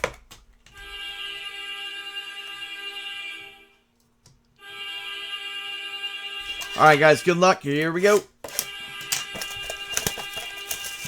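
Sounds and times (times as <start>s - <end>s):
buzzer-like electronic tone: 0.7s - 3.8s, 4.6s - 7.3s, 8.5s - 11.0s.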